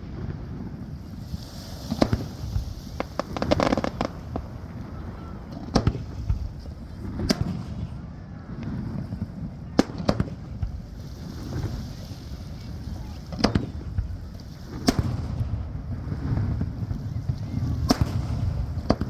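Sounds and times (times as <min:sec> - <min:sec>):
fireworks bursting with sharp bangs: 0:00.0 - 0:19.0
wind and surf rumble: 0:00.0 - 0:19.0
crackling pops: 0:16.8 - 0:19.0.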